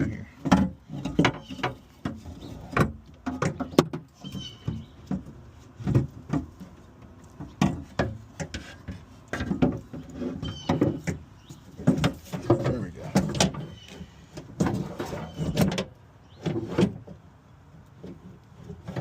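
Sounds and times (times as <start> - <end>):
clicks knocks and rattles: 0.4 - 17.2.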